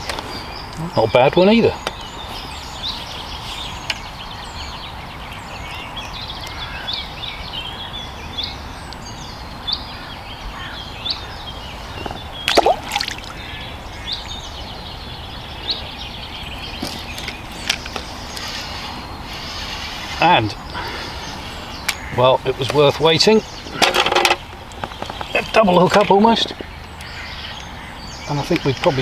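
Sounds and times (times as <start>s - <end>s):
small birds chirping: 0.0s - 29.0s
steady outdoor hiss: 0.0s - 29.0s
water sloshing: 11.8s - 13.8s.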